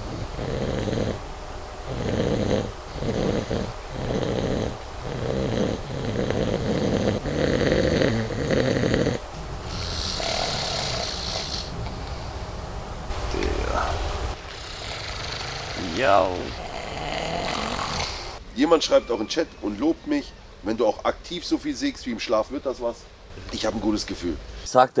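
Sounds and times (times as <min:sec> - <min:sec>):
man snoring loudly: 0:00.0 - 0:12.4, 0:13.1 - 0:18.4
hissy breath: 0:00.0 - 0:18.4.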